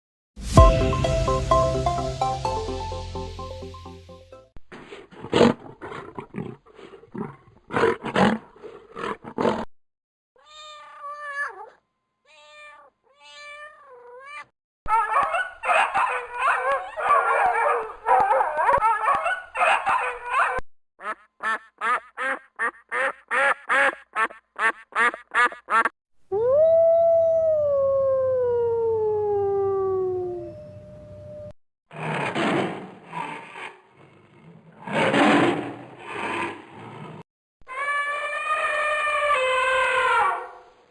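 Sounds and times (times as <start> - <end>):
long falling howl: 26.3 - 30.6.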